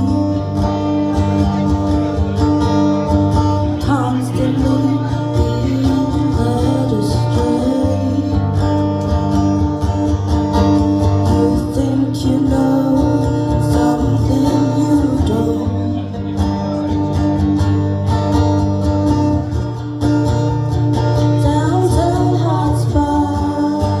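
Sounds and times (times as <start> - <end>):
person singing: 0.0 - 9.4, 10.8 - 17.4, 21.2 - 24.0
strummed acoustic guitar: 0.0 - 24.0.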